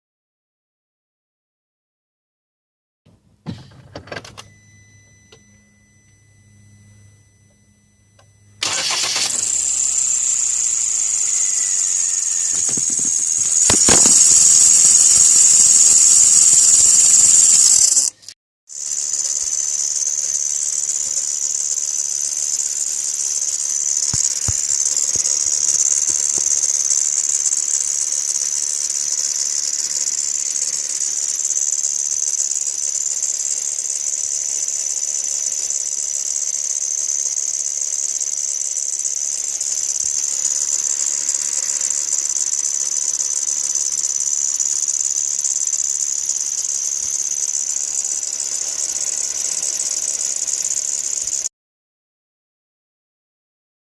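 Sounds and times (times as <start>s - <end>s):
high-pitched whistle: 4.4s - 18.2s.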